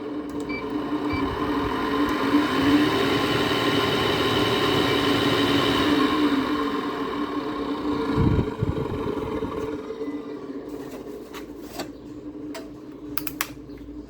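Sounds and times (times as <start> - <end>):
air conditioner fan rushing: 0.0 - 14.0
sharp clicks: 13.2 - 13.6.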